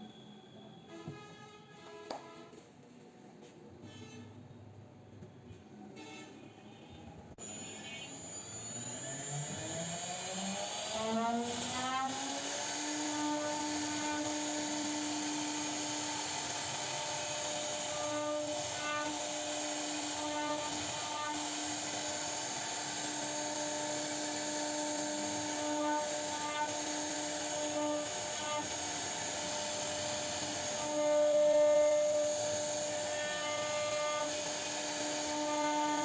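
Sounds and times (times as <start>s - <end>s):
router spindle whining: 7.4s - 36.0s.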